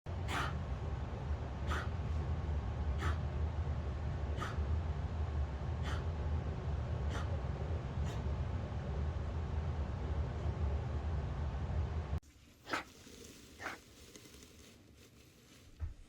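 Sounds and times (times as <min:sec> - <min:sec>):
low rumble: 0:00.1 - 0:12.2.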